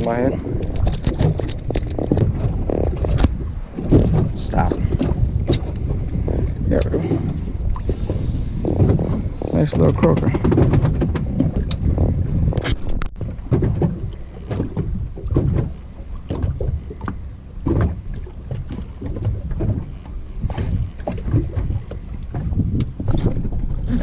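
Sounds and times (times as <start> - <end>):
waves slapping boat hull: 0.0 - 24.0
wind buffeting microphone: 0.0 - 24.0
sharp clicks and knocks: 8.7 - 20.1.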